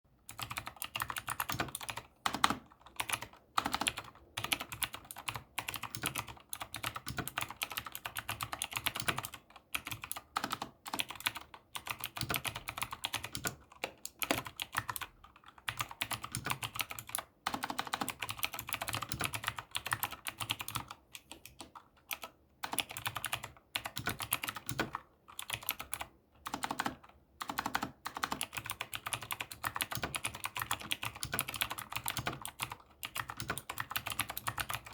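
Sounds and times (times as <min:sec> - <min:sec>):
mechanical keyboard typing: 0:00.3 - 0:34.9.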